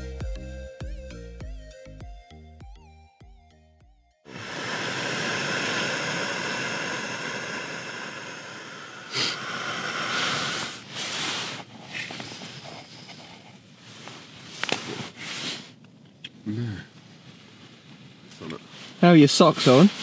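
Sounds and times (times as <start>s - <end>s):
steady hissing rush: 4.3s - 11.7s.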